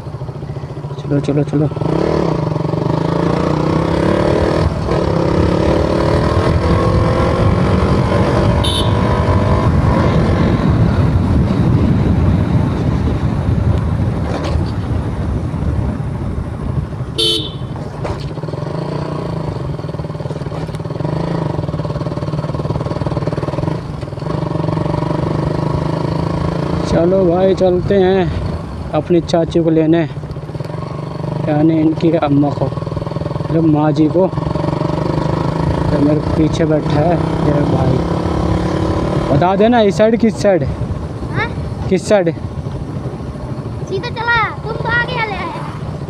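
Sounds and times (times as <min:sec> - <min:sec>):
motorcycle engine accelerating: 0:00.0 - 0:46.0
wind and road noise: 0:00.0 - 0:46.0
vehicle horn toots: 0:08.5 - 0:09.3, 0:17.2 - 0:17.8.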